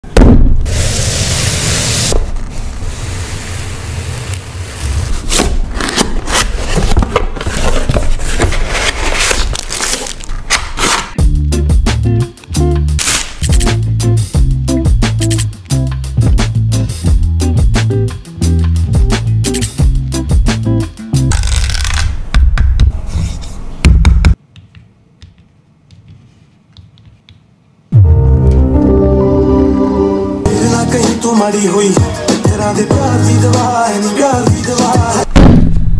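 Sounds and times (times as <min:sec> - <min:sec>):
cardboard packaging rustling: 0:04.6 - 0:11.2, 0:21.3 - 0:22.1
music with heavy bass beat: 0:11.2 - 0:21.3, 0:30.4 - 0:35.3.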